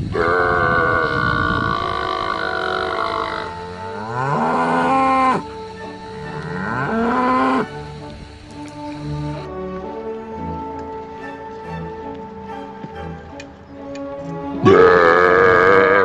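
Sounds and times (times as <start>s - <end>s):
cow mooing: 0.1s - 7.9s, 14.6s - 16.0s.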